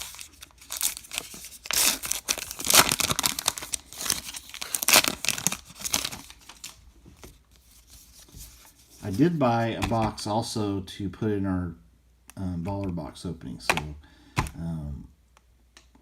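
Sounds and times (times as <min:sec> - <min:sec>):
card pack wrapper tearing and crinkling: 0:00.0 - 0:06.8.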